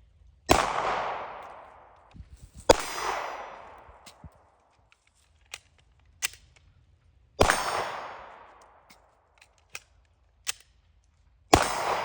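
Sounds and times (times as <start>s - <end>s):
pistol shots with echo: 0.5s - 2.0s, 2.7s - 4.4s, 7.4s - 9.0s, 11.5s - 12.0s
magazine clicks: 0.5s - 12.0s.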